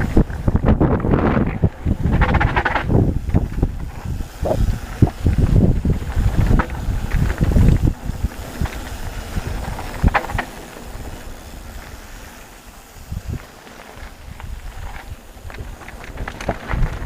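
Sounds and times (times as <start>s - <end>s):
bike clattering over bumps: 0.0s - 17.0s
tyres rumbling on dirt: 0.0s - 17.0s
wind on microphone: 0.0s - 17.0s.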